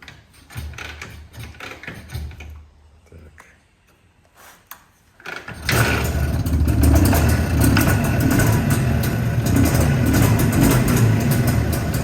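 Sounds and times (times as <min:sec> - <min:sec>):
motorcycle engine starting and running: 0:05.2 - 0:12.0.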